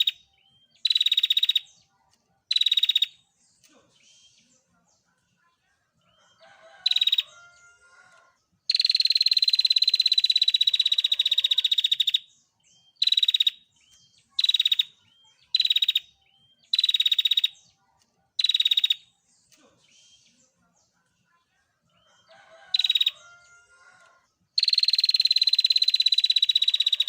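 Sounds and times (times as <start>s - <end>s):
bird buzzy trill: 0.0s - 1.7s, 2.5s - 3.2s, 8.7s - 12.2s, 13.0s - 17.6s, 18.4s - 19.1s, 24.6s - 27.0s
soft bird chirps: 0.0s - 21.1s, 21.9s - 27.0s.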